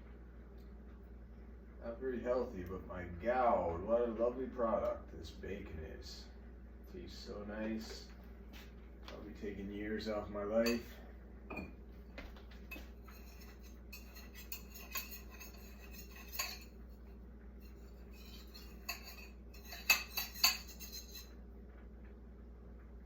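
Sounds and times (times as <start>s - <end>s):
faint low hum: 0.0s - 23.0s
dishes and utensils clattering: 10.6s - 11.8s, 12.7s - 16.8s, 17.6s - 21.3s.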